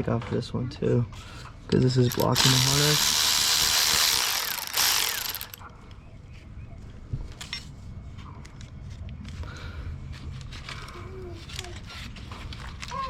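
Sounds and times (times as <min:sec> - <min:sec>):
ratchet wrench rattling: 0:02.0 - 0:05.7.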